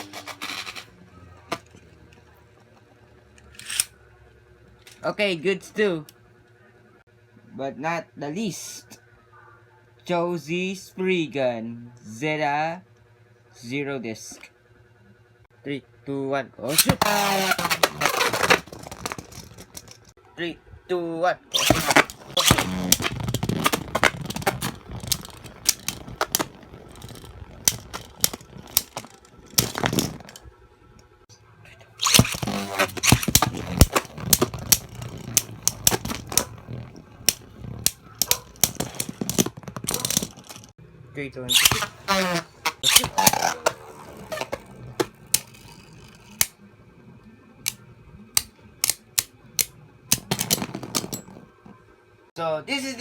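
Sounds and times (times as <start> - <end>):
low whir of spinning tops: 16.6 - 20.1, 21.5 - 31.2, 32.0 - 40.7, 41.4 - 51.9.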